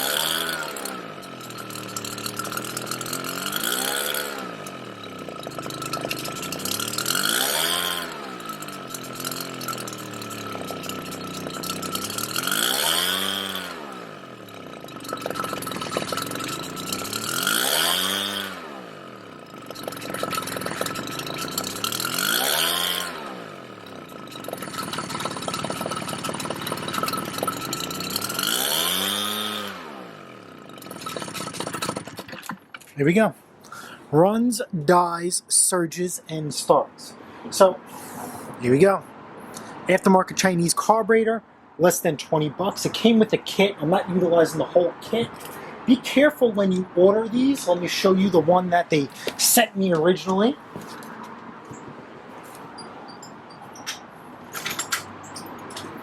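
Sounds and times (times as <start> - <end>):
leaf blower engine surging: 0.0 - 32.8, 33.7 - 34.1, 42.8 - 51.3.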